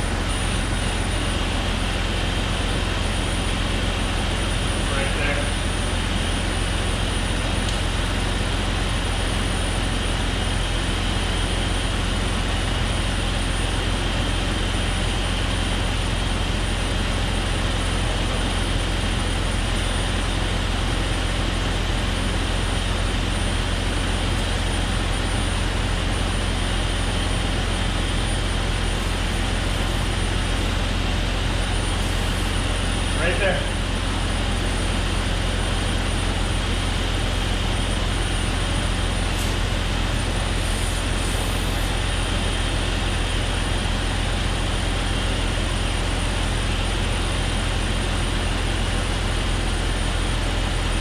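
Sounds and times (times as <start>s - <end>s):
car engine idling: 24.9s - 41.5s.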